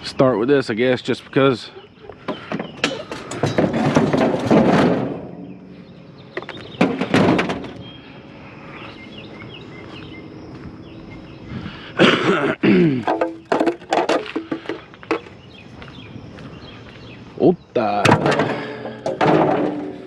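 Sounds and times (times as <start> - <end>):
scrap scraping: 2.2 - 5.6
thunks of scrap items: 2.3 - 5.5, 6.4 - 7.8, 13.0 - 15.3, 18.0 - 20.0.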